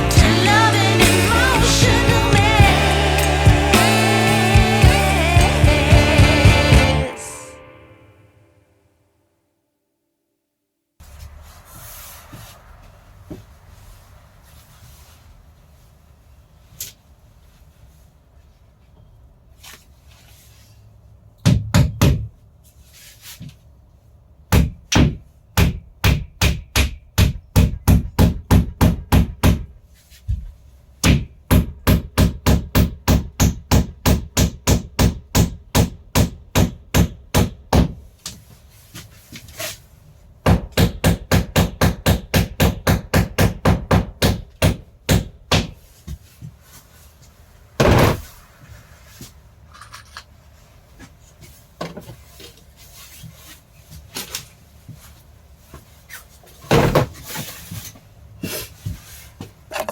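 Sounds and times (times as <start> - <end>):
hammer striking nails: 31.0 - 38.0, 40.4 - 45.8.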